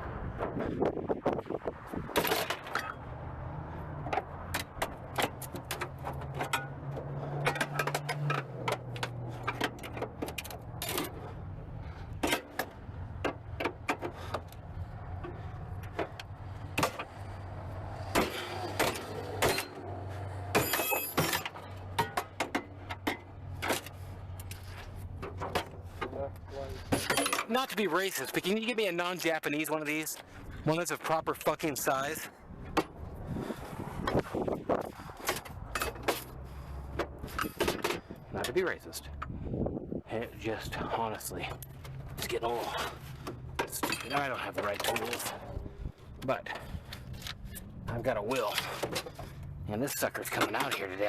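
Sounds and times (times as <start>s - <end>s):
hand tools clinking on metal: 20.5s - 26.1s, 26.8s - 28.5s, 43.6s - 45.5s.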